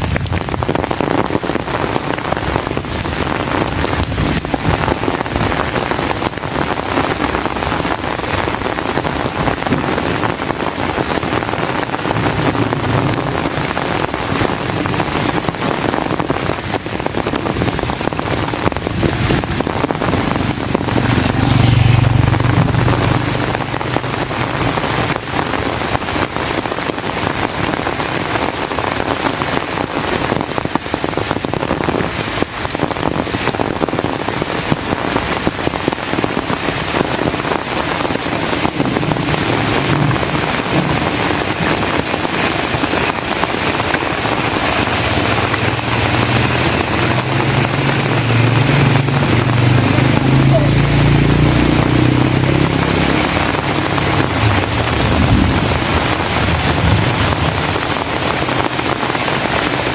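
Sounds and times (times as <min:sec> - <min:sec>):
heavy rain falling: 0:00.0 - 0:59.9
low rumble: 0:16.2 - 0:25.9, 0:37.9 - 0:43.8, 0:44.6 - 0:52.0, 0:53.2 - 0:58.6.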